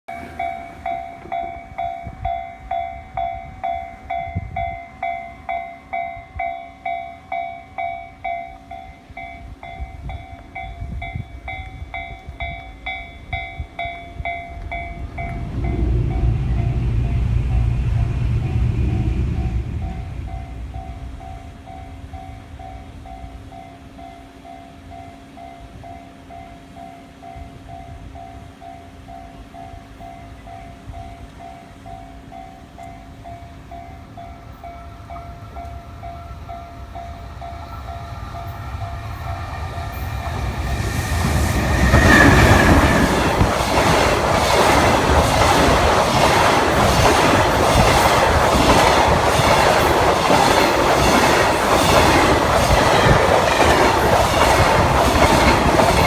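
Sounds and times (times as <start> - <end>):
level crossing warning bell: 0.1 - 41.0
freight train rumbling past: 0.1 - 56.0
steady low hum: 14.8 - 23.1.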